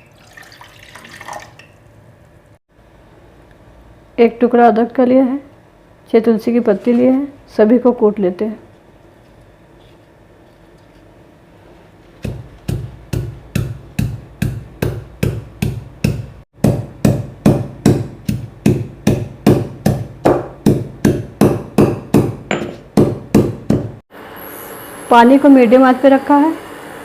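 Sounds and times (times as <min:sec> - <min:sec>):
pestle pounding in a mortar: 0:12.2 - 0:24.0.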